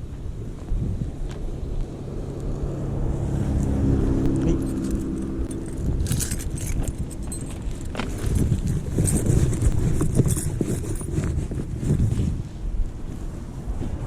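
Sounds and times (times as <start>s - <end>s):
vehicle engine hum: 0.0s - 14.0s
wind rumbling on microphone: 0.0s - 14.0s
jangle of metal clicks: 4.3s - 11.4s.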